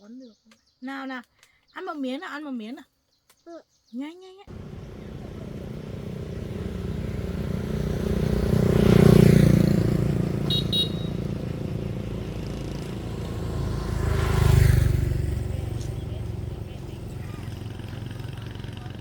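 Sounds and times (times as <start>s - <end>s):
vehicle engines rumbling: 4.5s - 19.0s.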